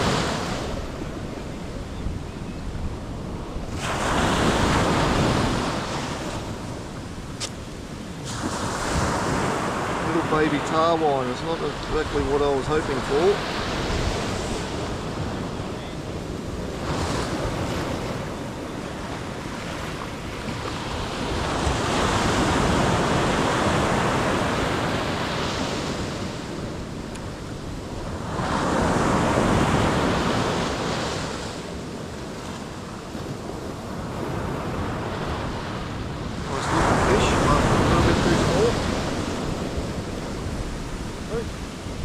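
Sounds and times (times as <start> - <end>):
ocean surf breaking: 0.0 - 42.0
wind buffeting microphone: 0.0 - 42.0.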